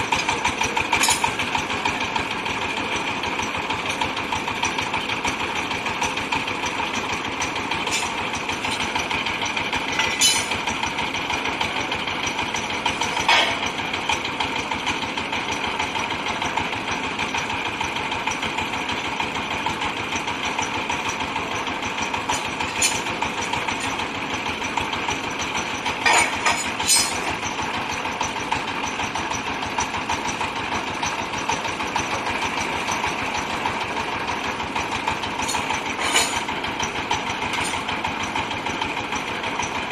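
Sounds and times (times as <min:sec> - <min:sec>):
drilling rig running: 0:00.0 - 0:39.9.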